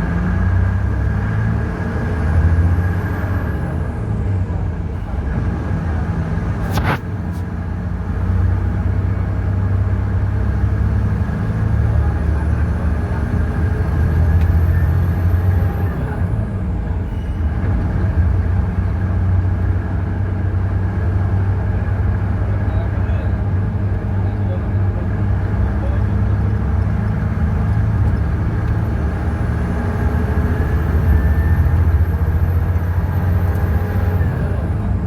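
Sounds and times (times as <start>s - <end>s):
bus diesel engine running: 0.0s - 35.0s
turbocharger whistling: 30.2s - 34.4s.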